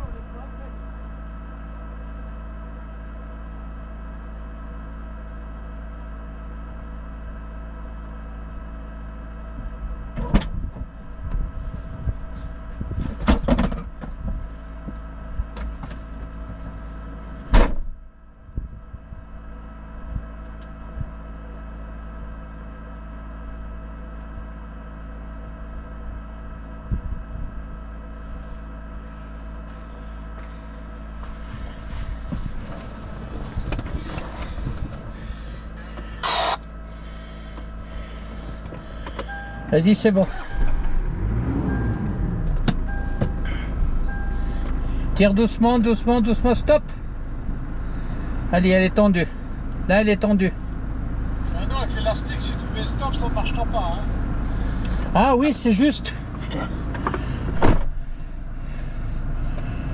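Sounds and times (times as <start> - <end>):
engine idling: 0.0 - 59.9
sharp clunks and knocks: 12.9 - 15.0, 56.9 - 58.0.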